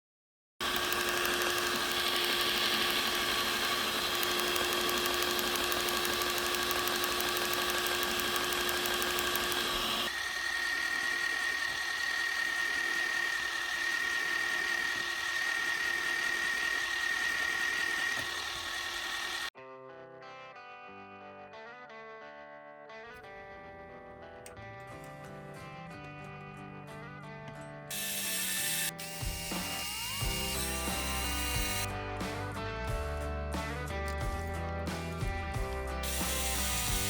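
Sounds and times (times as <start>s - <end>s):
fast gearbox ticking: 0.6s - 10.1s, 27.9s - 31.9s, 36.0s - 37.0s
electric motor gear whine: 0.6s - 19.5s, 27.9s - 31.9s, 36.0s - 37.0s.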